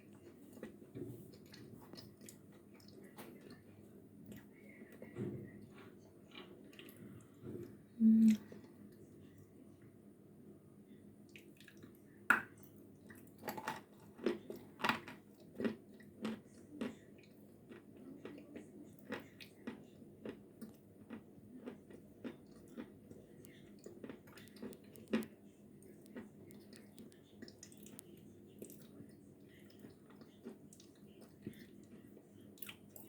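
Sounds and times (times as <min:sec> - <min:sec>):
crunchy chewing: 0:13.1 - 0:33.0.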